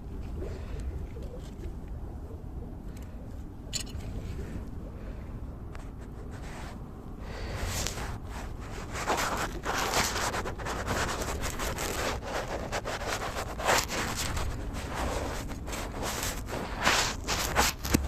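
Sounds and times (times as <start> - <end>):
rubbing and scraping: 5.7 - 18.0.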